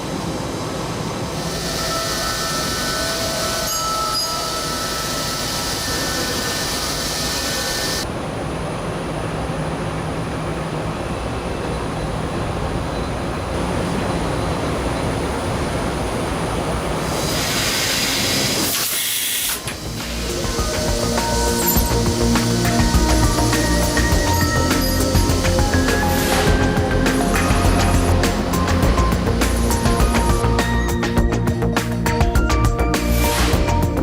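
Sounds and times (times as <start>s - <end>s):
high hiss: 0.0s - 8.0s, 16.8s - 32.1s
cnc machine cutting: 17.5s - 30.6s.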